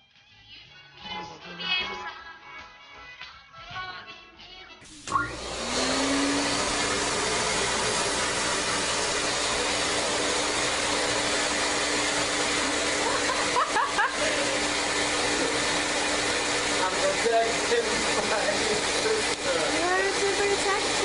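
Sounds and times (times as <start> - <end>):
electric motor whirring: 4.9 - 21.0.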